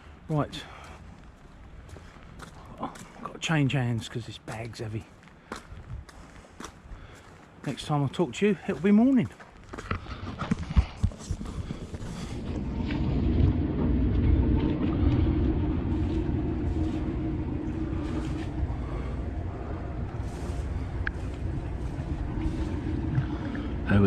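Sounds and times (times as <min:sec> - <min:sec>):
diesel engine rumbling: 0:11.4 - 0:24.0.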